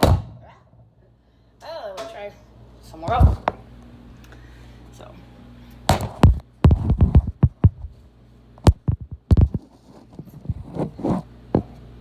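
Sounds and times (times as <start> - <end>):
objects thumping and knocking: 5.9 - 7.9, 8.6 - 9.7.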